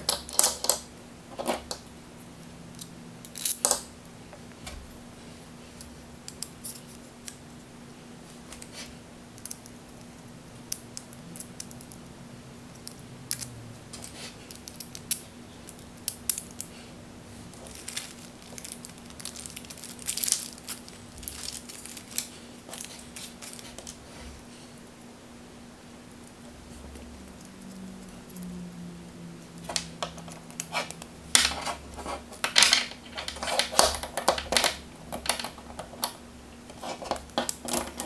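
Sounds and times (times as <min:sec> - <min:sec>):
small metal parts clicking and scraping: 0:00.0 - 0:01.8, 0:02.7 - 0:03.9, 0:12.8 - 0:16.7, 0:17.5 - 0:24.0, 0:29.6 - 0:38.0.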